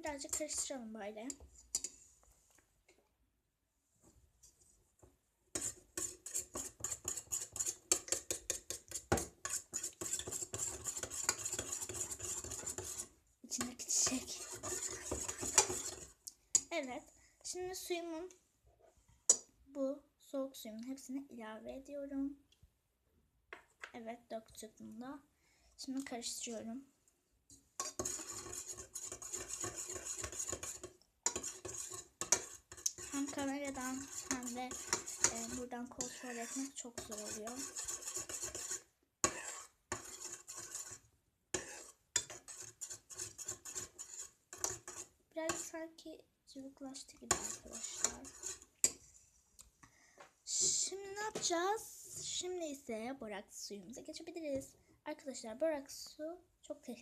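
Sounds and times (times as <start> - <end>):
spoon scraping a bowl: 1.3 - 2.0, 5.5 - 16.7, 27.8 - 45.7, 47.2 - 49.2.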